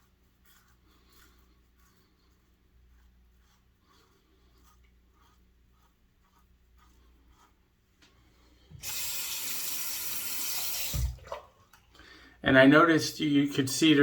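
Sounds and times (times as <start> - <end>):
razor scraping stubble: 0.0 - 8.2
tap water running into sink: 8.8 - 11.9.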